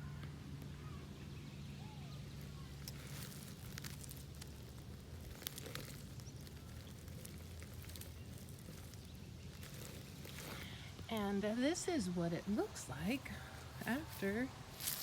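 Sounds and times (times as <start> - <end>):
steady low rumble: 0.0 - 15.0
light clicks and crackles: 2.3 - 11.4.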